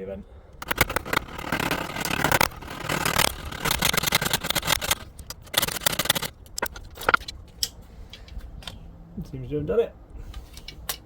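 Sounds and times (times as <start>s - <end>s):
tool scraping through leather: 0.6s - 7.2s
sharp clicks: 0.6s - 7.8s.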